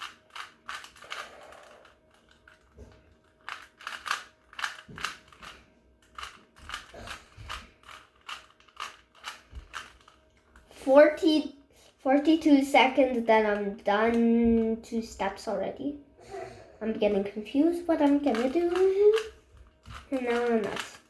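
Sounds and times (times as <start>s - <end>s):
plastic puzzle cube clicking: 0.0s - 10.2s, 18.0s - 21.0s.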